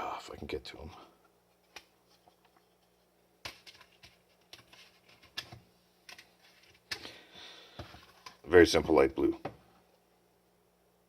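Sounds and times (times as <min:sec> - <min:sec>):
plastic case clicks and rustles: 0:03.4 - 0:07.1.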